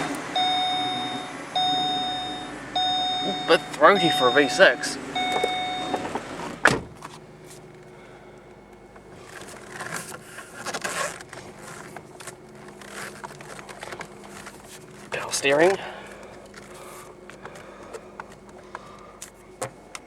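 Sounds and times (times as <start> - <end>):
in-car chime: 0.0 - 9.0
car engine idling: 0.0 - 20.0.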